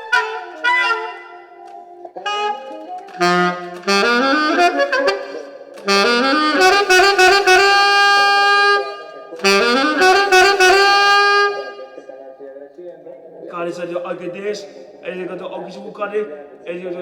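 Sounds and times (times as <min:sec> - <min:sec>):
saxophone playing: 0:00.0 - 0:12.0.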